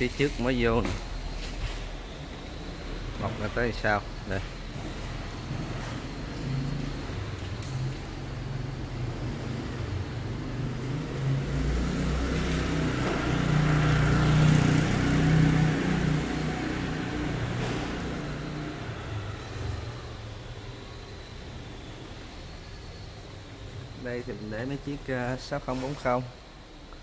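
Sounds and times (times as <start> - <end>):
vehicle engine passing by: 4.8 - 24.4.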